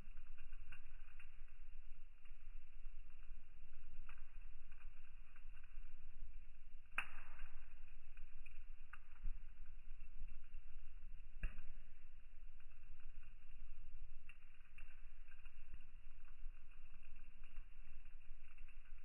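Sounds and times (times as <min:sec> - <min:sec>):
log fire crackling: 0:00.0 - 0:19.0
low steady rumble: 0:00.0 - 0:19.0
sharp fire pops: 0:03.4 - 0:06.0, 0:06.7 - 0:19.0.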